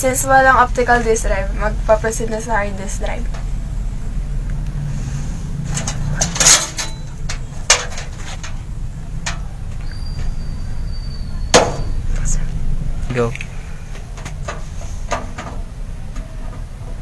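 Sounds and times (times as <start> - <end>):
steady low hum: 0.0 - 17.0
hard drive knocking and clattering: 13.9 - 17.0.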